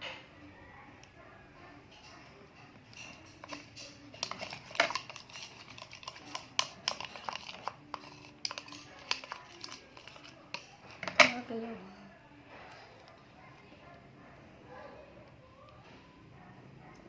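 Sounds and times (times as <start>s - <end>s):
utensil stirring in container: 1.9s - 11.5s.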